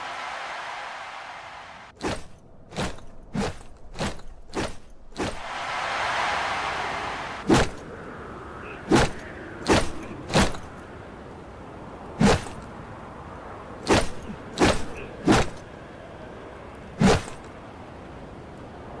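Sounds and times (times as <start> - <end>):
rush of noise: 5.2 - 19.0.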